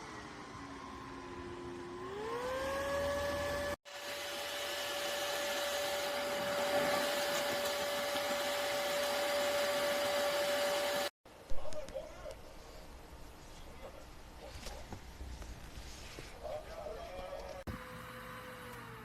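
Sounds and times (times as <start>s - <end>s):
electric fan motor whine: 0.0s - 11.1s, 17.7s - 19.0s.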